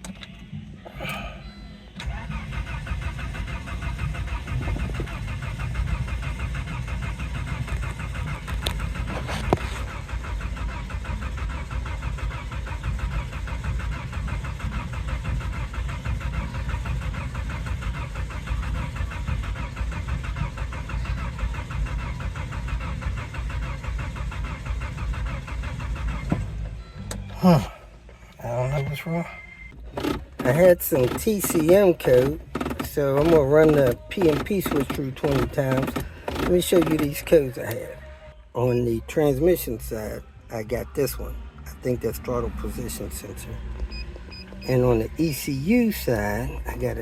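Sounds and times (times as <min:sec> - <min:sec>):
car engine cranking on starter: 0:00.0 - 0:47.0.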